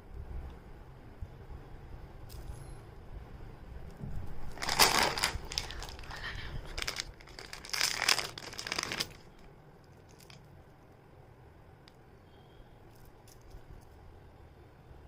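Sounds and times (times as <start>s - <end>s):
packaging crinkling: 4.5s - 10.5s.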